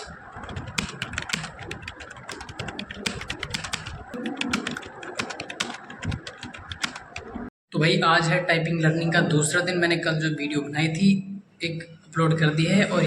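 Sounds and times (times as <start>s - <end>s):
fast typing on keyboard: 0.0s - 7.5s.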